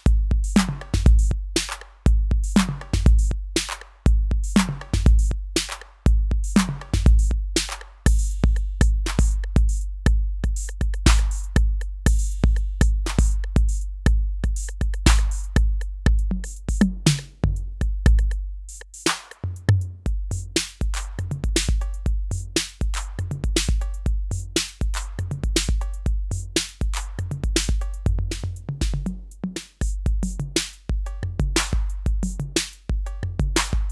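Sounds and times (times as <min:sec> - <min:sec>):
drum machine beat: 0:00.0 - 0:33.9
fast hi-hats: 0:00.0 - 0:33.9
deep booming bass drum: 0:00.1 - 0:18.5, 0:20.1 - 0:33.9
snare and clap hits: 0:00.6 - 0:06.0, 0:06.6 - 0:08.1, 0:09.1 - 0:09.6, 0:11.1 - 0:11.6, 0:13.1 - 0:13.5, 0:15.1 - 0:15.6, 0:17.0 - 0:17.4, 0:19.0 - 0:19.5, 0:20.6 - 0:21.9, 0:22.6 - 0:23.9, 0:24.6 - 0:25.8, 0:26.6 - 0:27.8, 0:30.6 - 0:30.9, 0:31.6 - 0:32.0, 0:32.6 - 0:32.9, 0:33.6 - 0:33.9.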